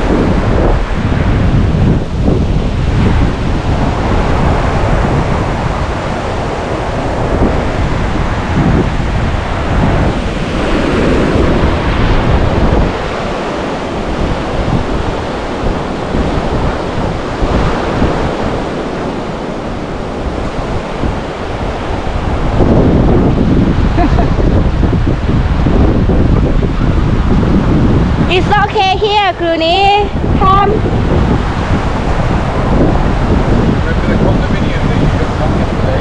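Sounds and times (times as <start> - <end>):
sea waves washing onto beach: 0.0 - 36.0
wind buffeting microphone: 0.0 - 36.0.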